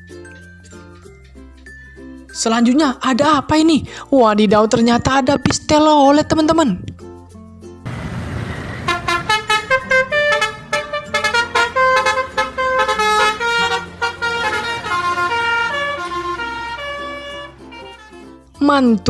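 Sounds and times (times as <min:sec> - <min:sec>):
toy electronic musical horn: 0:08.9 - 0:18.3.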